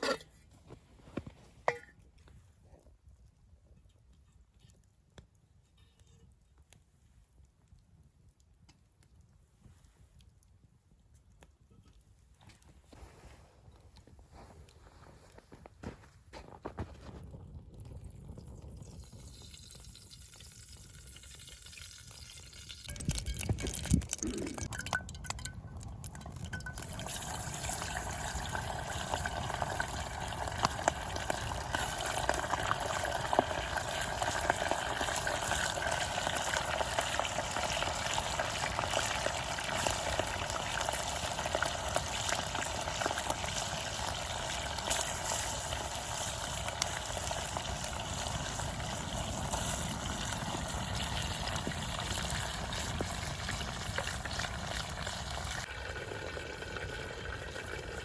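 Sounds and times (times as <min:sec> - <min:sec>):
campfire crackles: 0:00.0 - 0:58.0
meat sizzling: 0:26.8 - 0:58.0.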